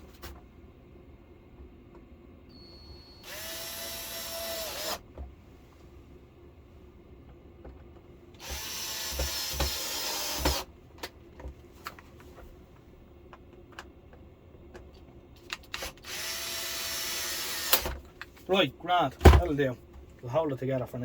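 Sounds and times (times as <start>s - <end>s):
cordless drill driving screws: 3.0s - 5.0s, 8.4s - 10.7s, 15.8s - 18.0s.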